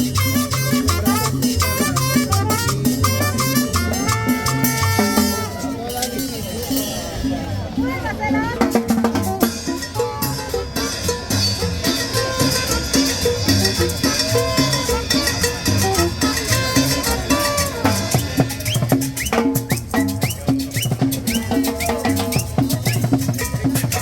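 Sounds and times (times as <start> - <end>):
tropical dance band music: 0.0 - 24.0.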